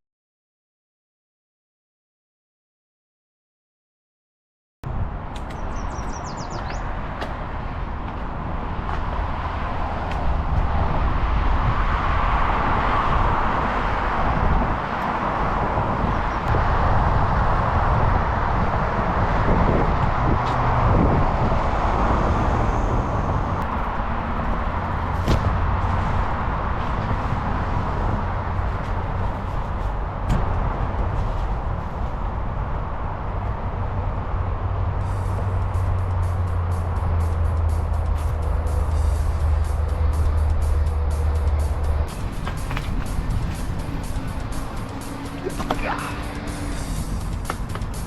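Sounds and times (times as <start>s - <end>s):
bike rolling rumble: 4.9s - 48.0s
wind on microphone: 4.9s - 48.0s
bird chirping: 5.5s - 6.9s
bike clicks and rattles: 41.6s - 45.8s.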